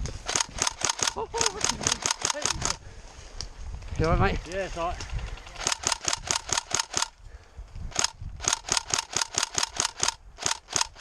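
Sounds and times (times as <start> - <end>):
airsoft rifle shots snapping: 0.2 - 2.8, 5.0 - 7.2, 7.9 - 11.0.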